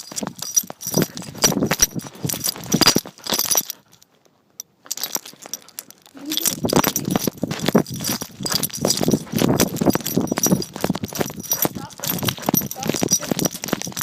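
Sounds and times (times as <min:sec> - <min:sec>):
metal dog tags jingling: 0:00.0 - 0:14.0
phone being jostled: 0:06.1 - 0:14.0.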